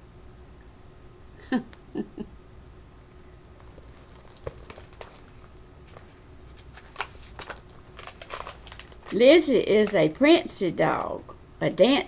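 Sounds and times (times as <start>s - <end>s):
book pages rustling: 3.6s - 10.0s.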